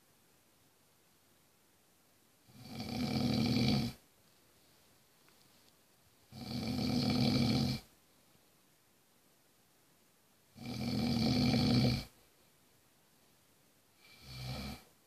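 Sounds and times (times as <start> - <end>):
man snoring: 2.5 - 4.0, 6.3 - 7.9, 10.6 - 12.2, 14.0 - 14.9.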